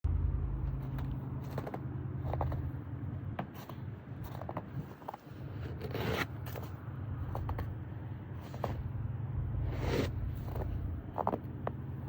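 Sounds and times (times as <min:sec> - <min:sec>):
low hum: 0:00.0 - 0:12.0
snow scraped off car: 0:04.8 - 0:06.8, 0:09.6 - 0:11.4.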